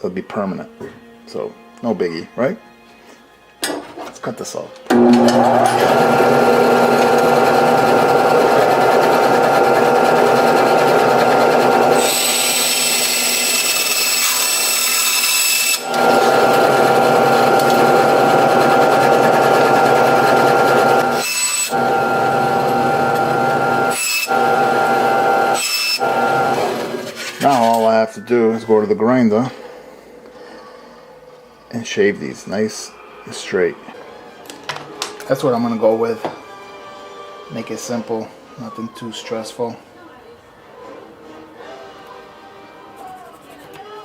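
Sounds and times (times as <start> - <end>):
power tool grinding: 4.9 - 27.7.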